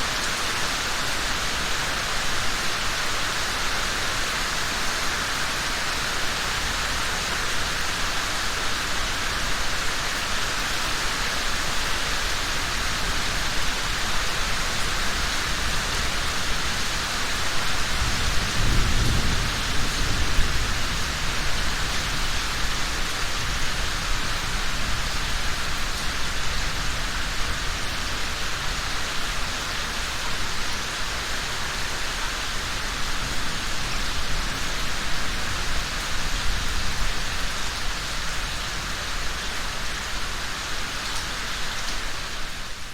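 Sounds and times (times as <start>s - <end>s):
steady rain falling: 0.0s - 42.9s
thunder rumble: 18.0s - 22.3s.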